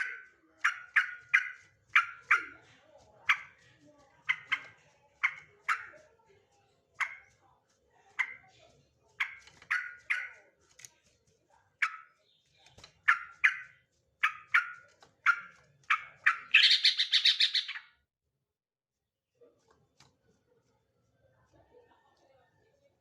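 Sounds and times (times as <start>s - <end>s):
bird chirping: 0.0s - 2.7s, 3.3s - 6.0s, 8.1s - 10.5s, 11.8s - 17.9s
bird rattling call: 0.0s - 6.0s, 9.2s - 10.4s, 11.8s - 17.8s.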